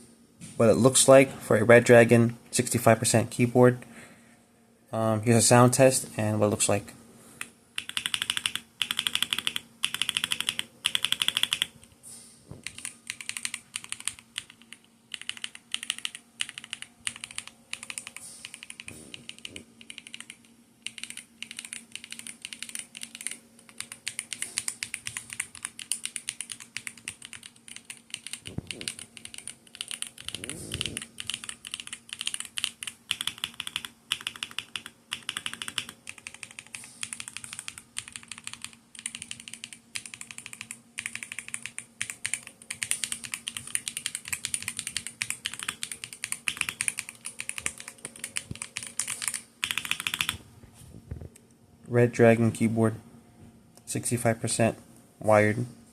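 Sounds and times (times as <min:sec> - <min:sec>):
mechanical keyboard typing: 0:07.8 - 0:11.8, 0:12.6 - 0:50.4.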